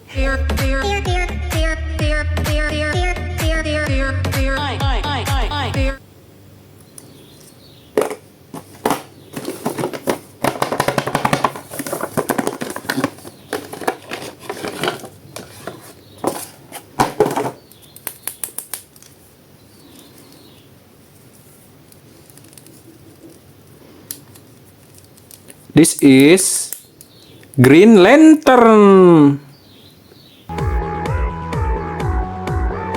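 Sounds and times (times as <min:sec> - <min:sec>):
plastic packaging crackling: 0:08.0 - 0:19.3, 0:21.1 - 0:26.0.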